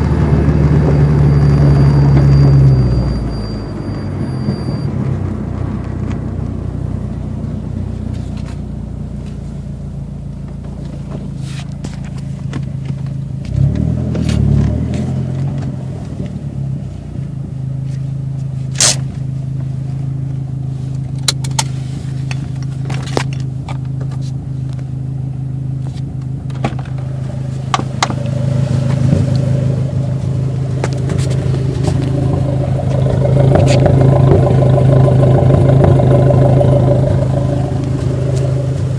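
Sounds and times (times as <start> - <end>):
engine revving: 0.0 - 3.5, 13.4 - 16.3, 27.0 - 38.9
car engine running: 0.0 - 38.9.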